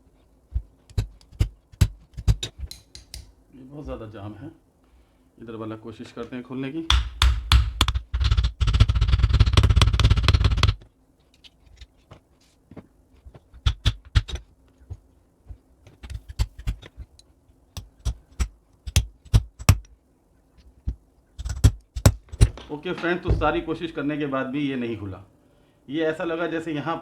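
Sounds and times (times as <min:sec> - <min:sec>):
rapid clicking and rattling: 0:07.5 - 0:10.8.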